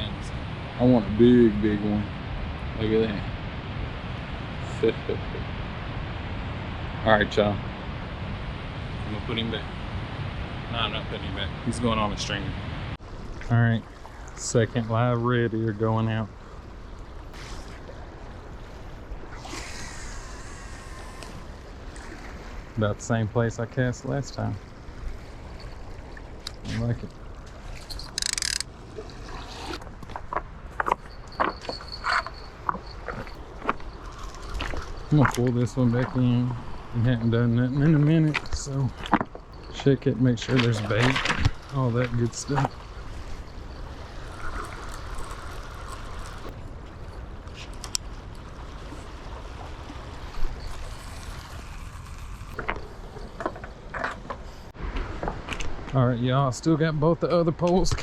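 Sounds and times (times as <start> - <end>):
fishing reel clicker ratcheting: 28.0 - 28.7.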